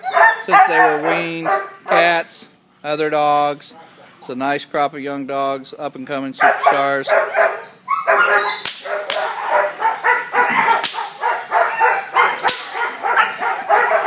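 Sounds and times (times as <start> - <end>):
dogs barking: 0.0 - 2.2, 6.4 - 14.0
sharp cracks: 8.6 - 9.4, 10.4 - 11.3, 12.2 - 13.0.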